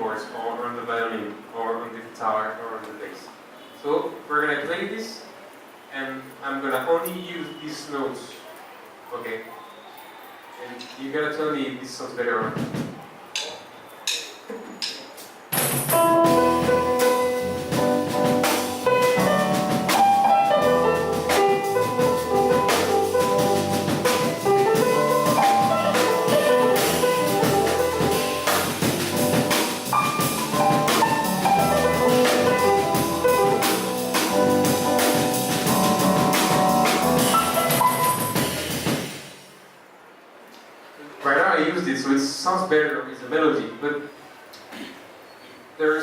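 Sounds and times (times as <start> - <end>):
drum groove: 12.4 - 39.5
jazz piano trio playing: 15.6 - 39.3.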